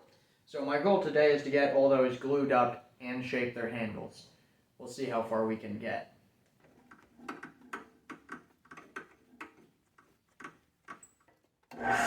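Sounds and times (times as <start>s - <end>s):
machine running loud: 11.8s - 12.0s.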